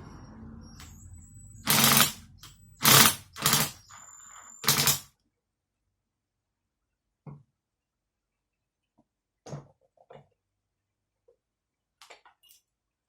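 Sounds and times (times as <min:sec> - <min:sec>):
loud mechanical rasps: 0:00.7 - 0:05.1.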